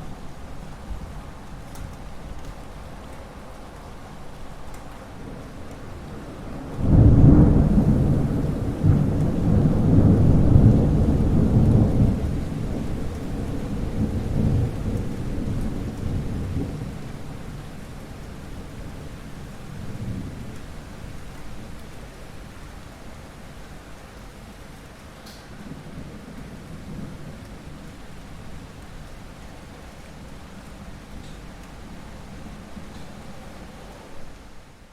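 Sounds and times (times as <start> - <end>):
steady rain: 0.0 - 34.9
thunder rolling: 6.6 - 18.9.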